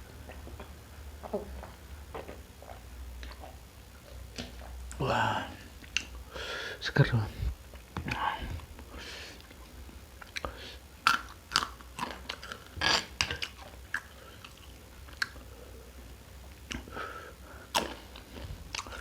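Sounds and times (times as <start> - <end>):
chewing and biting: 0.2 - 4.8, 9.4 - 15.5, 17.7 - 19.0
sharp food crunches: 10.2 - 15.4, 17.7 - 19.0.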